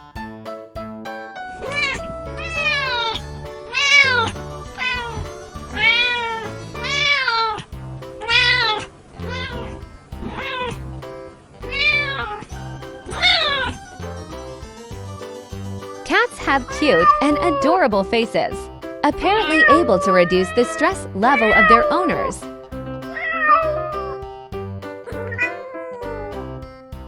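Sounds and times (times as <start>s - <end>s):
background music with steady beat: 0.0s - 25.5s
cat meowing: 1.7s - 7.6s, 8.2s - 10.8s, 11.7s - 12.5s, 16.5s - 17.8s, 19.4s - 22.4s, 23.1s - 24.2s, 25.1s - 26.5s.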